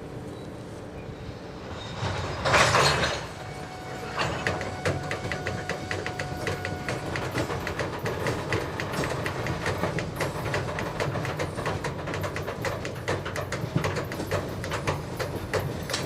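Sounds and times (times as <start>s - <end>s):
diesel locomotive engine rumble: 0.0s - 16.0s
wheel squeal: 0.3s - 10.4s
train wheels clicking over rail joints: 1.8s - 16.0s.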